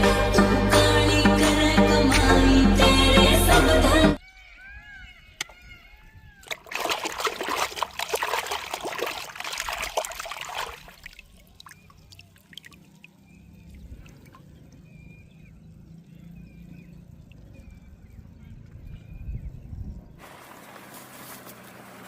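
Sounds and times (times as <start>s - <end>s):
water dripping: 6.4s - 18.9s
water pouring on plastic toys: 6.5s - 13.0s.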